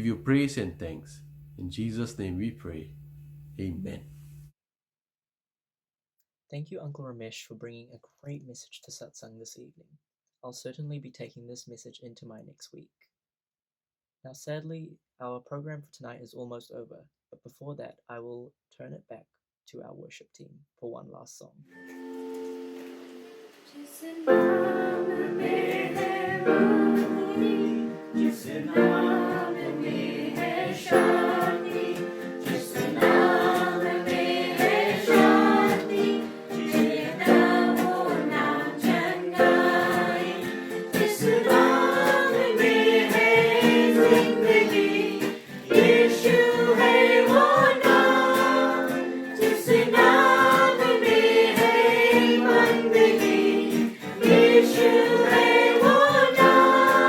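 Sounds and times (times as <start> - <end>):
strummed string instrument: 21.8 - 57.0
group of voices singing: 23.7 - 57.0.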